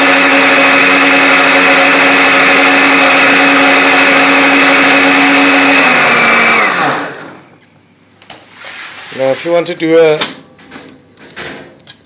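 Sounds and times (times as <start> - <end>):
blender motor running: 0.0 - 7.5.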